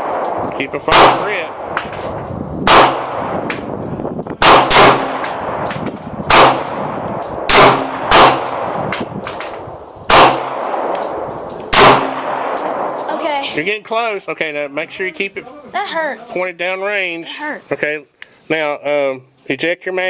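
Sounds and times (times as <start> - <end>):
pistol shots with echo: 0.0 - 3.7, 4.4 - 9.4, 10.1 - 13.1.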